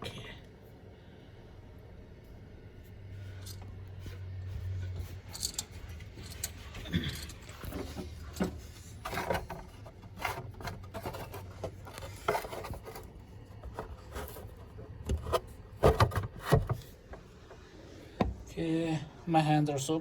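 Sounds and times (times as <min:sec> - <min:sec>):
steady low hum: 0:00.0 - 0:20.0
tools knocking and scraping: 0:03.3 - 0:17.6.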